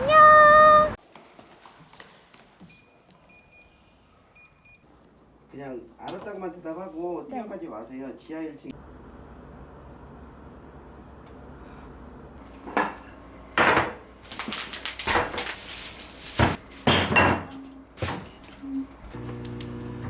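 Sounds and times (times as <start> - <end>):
dishes and utensils clattering: 12.5 - 14.0, 16.3 - 18.4.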